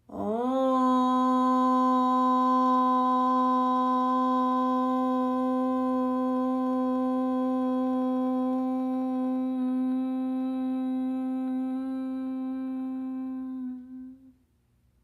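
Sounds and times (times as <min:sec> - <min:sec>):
woman chanting om: 0:00.0 - 0:14.4.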